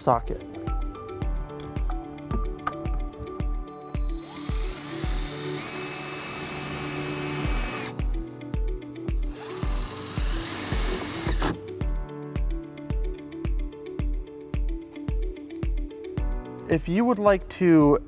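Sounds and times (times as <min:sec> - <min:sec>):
power drill driving screw into metal: 0:04.0 - 0:08.0, 0:09.3 - 0:11.6.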